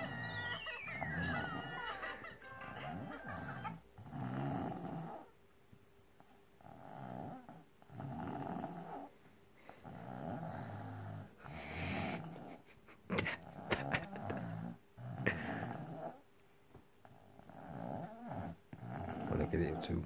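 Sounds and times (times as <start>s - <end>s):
child snoring: 3.7s - 5.3s, 6.6s - 9.1s, 9.8s - 12.6s, 13.2s - 16.2s, 17.1s - 19.5s.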